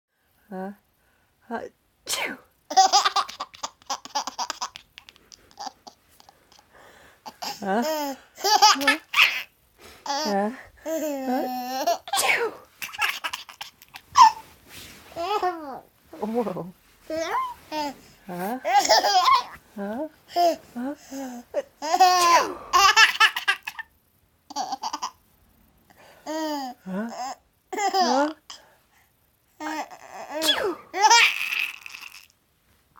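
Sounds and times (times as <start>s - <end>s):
sneeze: 2.1s - 2.5s, 12.1s - 12.6s, 30.4s - 30.9s
baby laughing: 2.7s - 6.6s, 7.2s - 9.5s, 12.8s - 14.4s, 18.6s - 19.6s, 21.6s - 23.9s, 24.5s - 25.2s, 29.6s - 32.3s.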